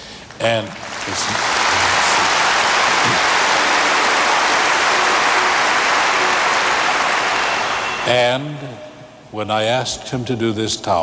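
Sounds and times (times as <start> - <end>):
large audience applauding: 0.2 - 8.4.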